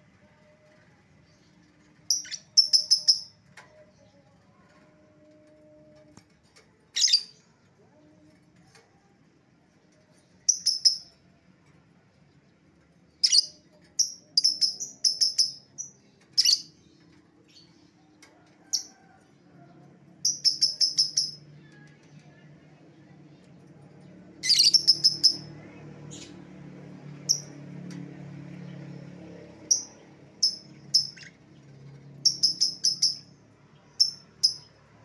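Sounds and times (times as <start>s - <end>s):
lovebird chirping: 2.1s - 3.3s, 24.4s - 25.5s.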